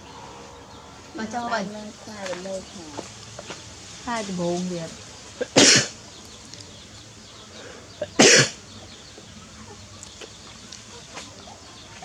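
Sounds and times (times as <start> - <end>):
loud cough: 5.4 - 6.0, 8.0 - 8.6.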